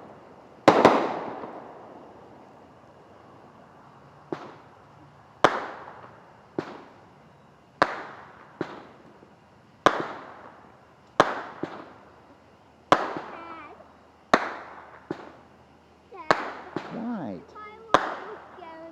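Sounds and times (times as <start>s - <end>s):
firework bangs echoing: 0.0s - 2.6s, 4.3s - 4.8s, 5.4s - 7.1s, 7.8s - 12.3s, 12.9s - 15.5s, 16.1s - 18.9s.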